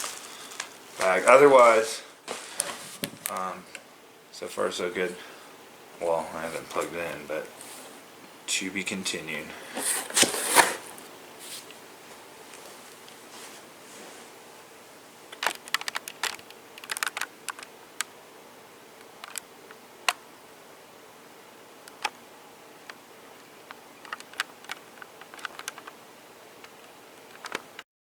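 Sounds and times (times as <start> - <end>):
handling clicks and taps: 23.6 - 26.0.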